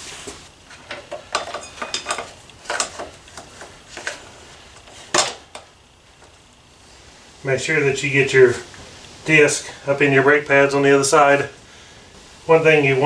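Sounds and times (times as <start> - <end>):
metallic clinks and knocks: 0.9 - 3.1.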